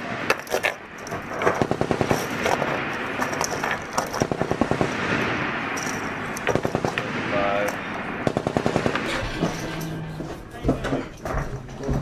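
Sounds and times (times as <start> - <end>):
machine gun bursts: 8.3 - 9.7.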